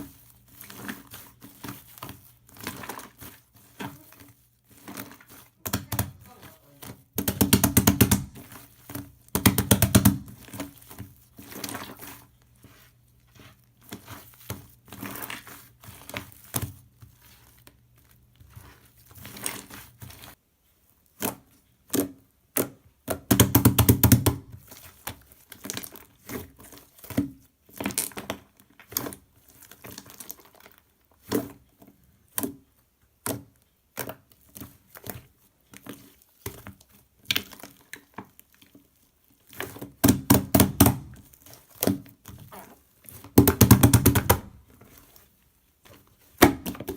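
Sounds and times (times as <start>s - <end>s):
slime being squished: 0.0s - 20.4s, 32.2s - 46.9s.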